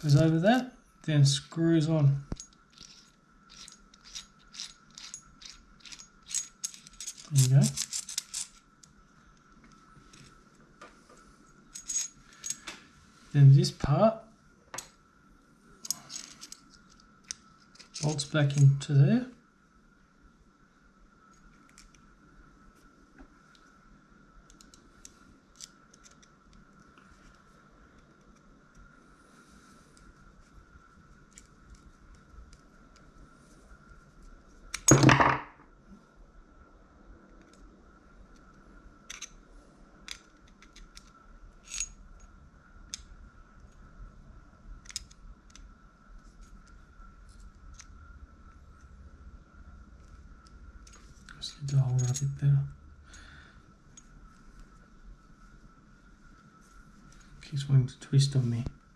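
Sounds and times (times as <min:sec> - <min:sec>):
faint steady tone: 0:00.0 - 0:58.9
metallic clicks of reel parts: 0:02.2 - 0:09.0, 0:15.8 - 0:18.8, 0:39.1 - 0:39.4, 0:40.0 - 0:43.1.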